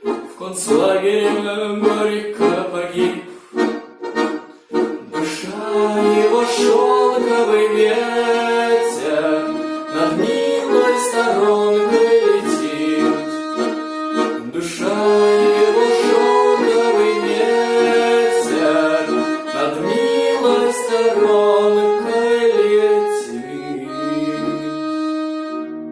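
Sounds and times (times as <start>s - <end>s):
instrumental music with held chords: 0.0s - 25.9s.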